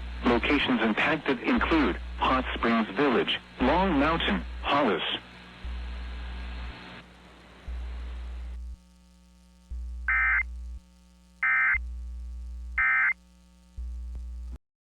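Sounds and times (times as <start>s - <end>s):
radio static: 0.0s - 14.6s
low hum: 3.4s - 14.6s
warbling digital data tones: 10.1s - 10.5s.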